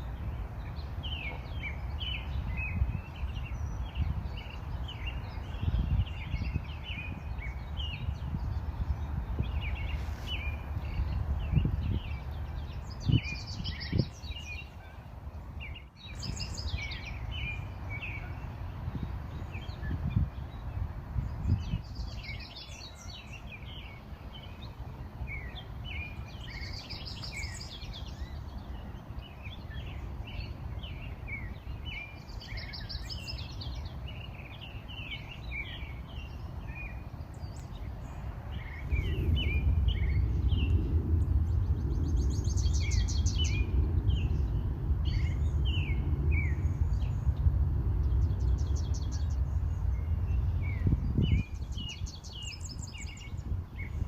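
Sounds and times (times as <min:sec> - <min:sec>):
songbirds chirping and singing: 0:00.0 - 0:54.0
trilled bird song: 0:00.0 - 0:54.0
low rumble: 0:38.4 - 0:51.8.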